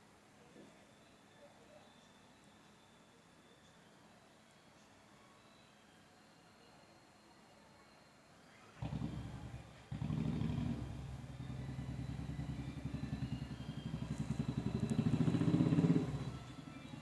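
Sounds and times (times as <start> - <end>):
engine throbbing: 8.8 - 17.0.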